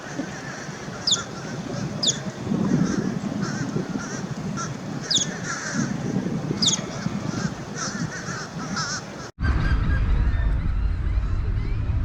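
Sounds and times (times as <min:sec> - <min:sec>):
birds honking calls: 0:00.0 - 0:09.3
steady low rumble: 0:09.4 - 0:12.0.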